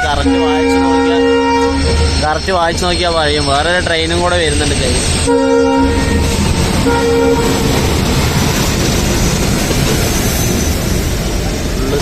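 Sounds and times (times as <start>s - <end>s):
train horn blasts: 0.0s - 2.2s, 5.2s - 8.0s
moving train rumble and clatter: 0.0s - 12.0s.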